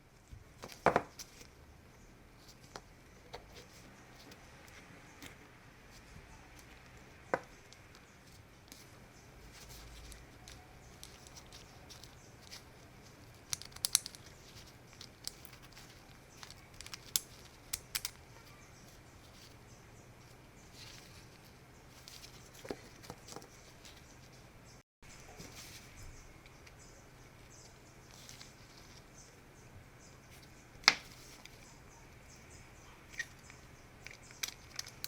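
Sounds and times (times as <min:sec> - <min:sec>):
small hard parts clicking and tapping: 0:09.6 - 0:18.3, 0:33.4 - 0:35.0.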